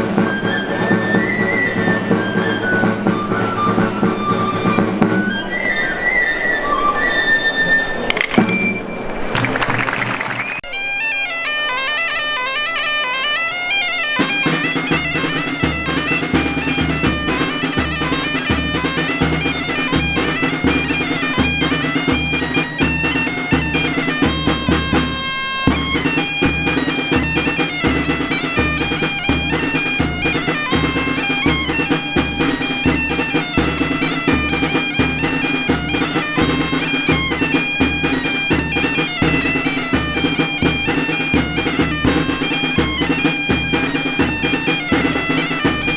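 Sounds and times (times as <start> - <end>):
wind instrument melody over drone: 0.0 - 8.0
drum beating evenly: 9.4 - 10.6, 14.4 - 45.9.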